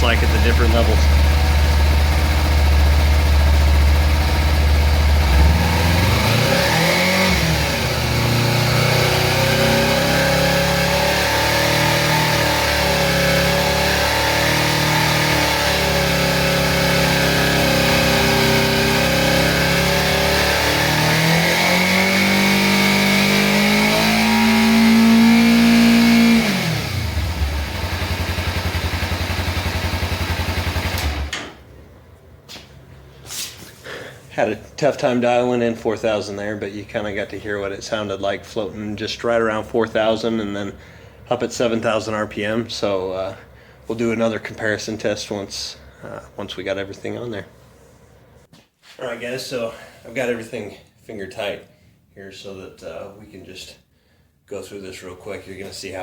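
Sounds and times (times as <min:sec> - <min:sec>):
motorcycle engine revving: 0:00.0 - 0:31.5.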